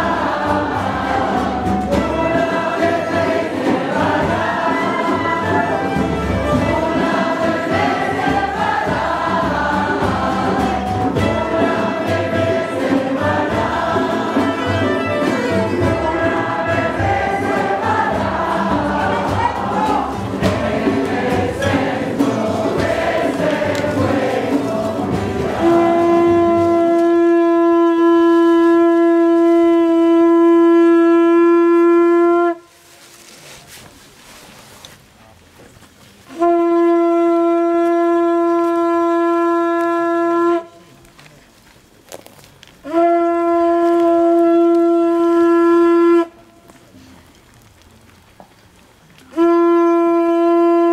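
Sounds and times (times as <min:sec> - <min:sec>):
voices singing: 0:00.0 - 0:26.8
low steady drum beat: 0:00.0 - 0:27.4
loud horn blast: 0:25.2 - 0:32.8, 0:36.3 - 0:41.0, 0:42.8 - 0:46.5, 0:49.3 - 0:50.9.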